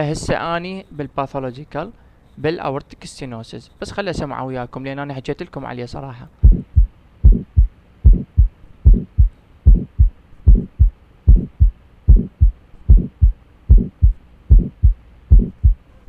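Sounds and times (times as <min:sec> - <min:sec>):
heartbeat with murmur: 0:06.4 - 0:16.0.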